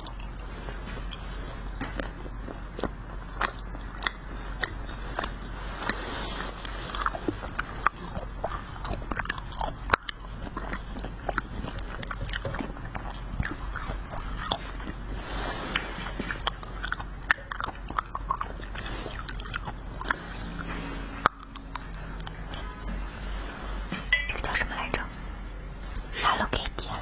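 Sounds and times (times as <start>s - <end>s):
chewing wax candy crunches: 0.0s - 23.0s.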